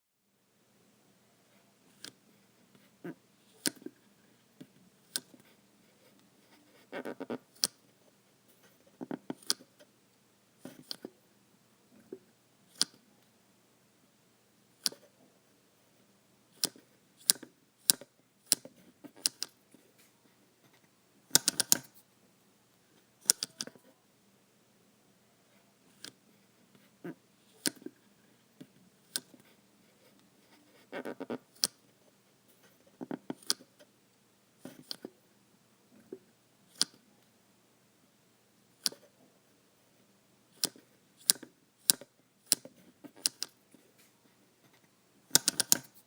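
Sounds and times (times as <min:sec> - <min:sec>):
fan regulator knob clicks: 0:45.4 - 0:45.9.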